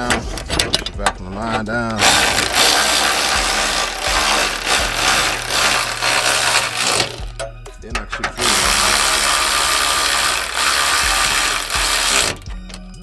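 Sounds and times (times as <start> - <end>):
vacuum pump hissing: 2.0 - 7.3, 8.4 - 12.5.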